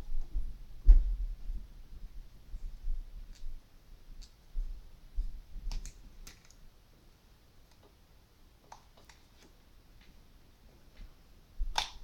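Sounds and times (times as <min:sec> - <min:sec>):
sharp plastic clicks: 0:11.7 - 0:12.0.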